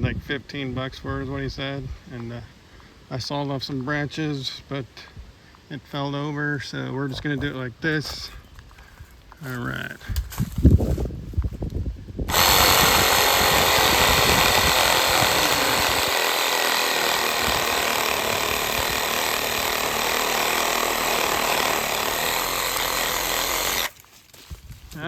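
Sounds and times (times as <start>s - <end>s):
reciprocating saw cutting a branch: 12.3s - 24.0s.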